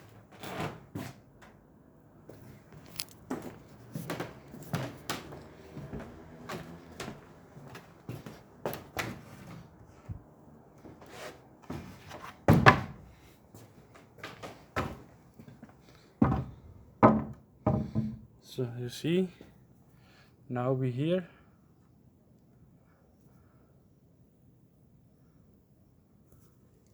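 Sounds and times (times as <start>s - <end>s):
knocks and clunks: 16.2s - 18.3s.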